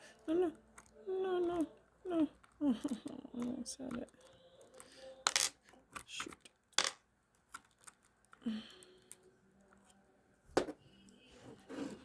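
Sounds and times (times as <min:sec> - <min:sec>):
screwdriver parts clicking: 0:07.4 - 0:10.0.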